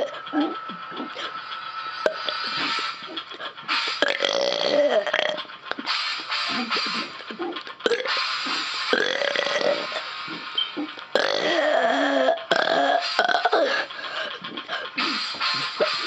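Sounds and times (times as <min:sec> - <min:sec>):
person burping: 0:04.0 - 0:05.4, 0:09.0 - 0:10.0, 0:11.1 - 0:13.9.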